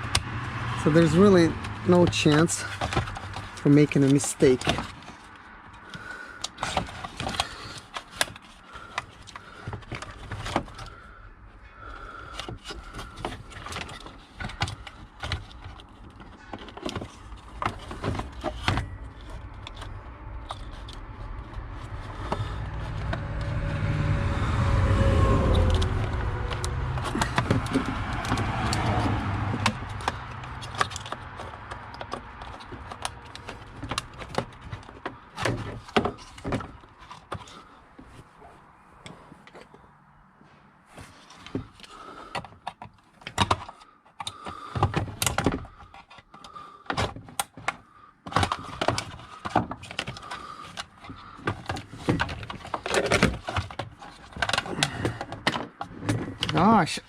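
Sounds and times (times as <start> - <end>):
low rumble with falling whine: 18.2 - 30.0.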